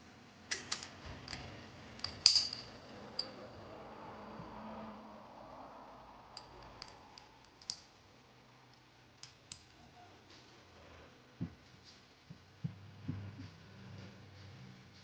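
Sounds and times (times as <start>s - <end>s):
pistol parts clicking: 2.0s - 2.6s, 6.8s - 7.8s.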